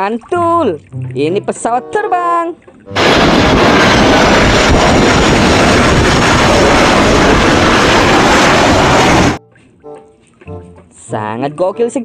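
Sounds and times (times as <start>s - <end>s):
airplane engine noise: 2.9s - 9.4s.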